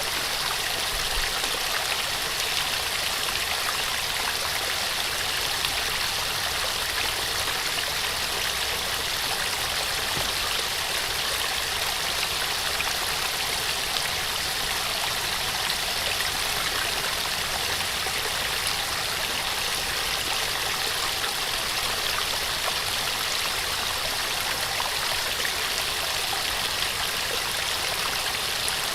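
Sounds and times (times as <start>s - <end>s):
small waterfall rushing: 0.0s - 28.9s.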